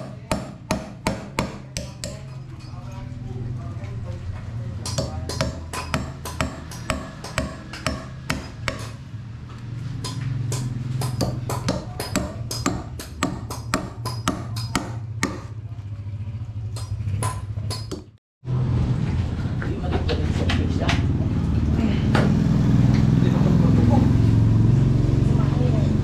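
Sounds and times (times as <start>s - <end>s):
sharp ringing knocks: 4.9s - 9.0s, 10.0s - 15.5s.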